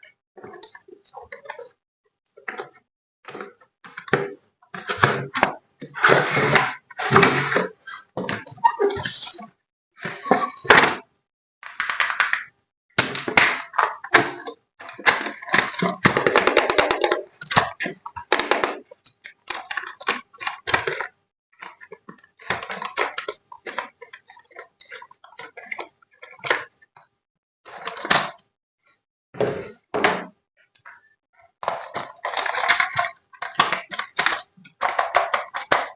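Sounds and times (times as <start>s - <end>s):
plastic and cardboard crinkling: 13.3s - 26.7s, 30.8s - 35.9s.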